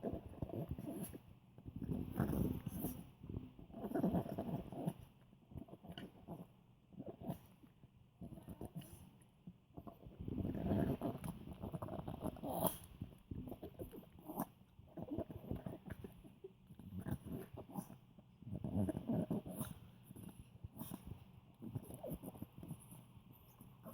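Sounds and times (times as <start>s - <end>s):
dog grunting and snorting: 3.7s - 5.0s, 9.8s - 16.2s, 16.8s - 22.7s.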